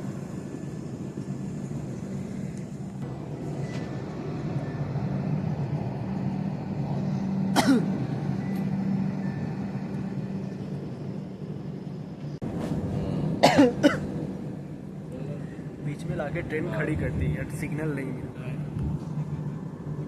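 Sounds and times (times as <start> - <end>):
train humming: 0.0 - 20.0.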